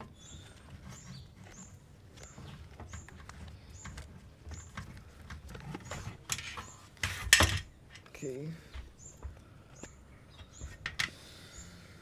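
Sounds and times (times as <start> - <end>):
bird chirping: 0.0 - 5.0, 8.8 - 11.9.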